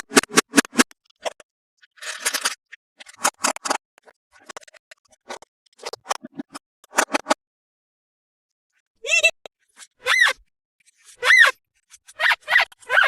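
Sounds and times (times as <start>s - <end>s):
toy packaging scratching and rustling: 2.0s - 3.8s.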